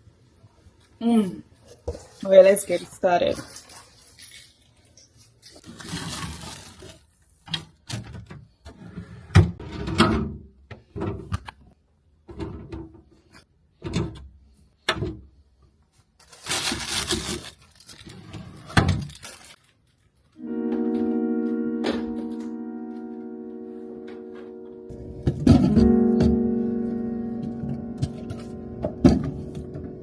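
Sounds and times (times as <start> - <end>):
bags rustling: 5.4 - 7.1, 16.2 - 19.9
items knocking as set down: 25.2 - 26.4, 28.0 - 30.0.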